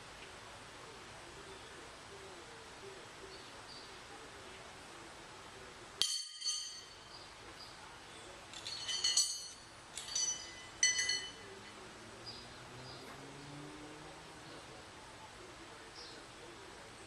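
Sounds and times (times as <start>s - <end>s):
bright ringing clinks: 6.0s - 7.2s, 8.6s - 11.6s.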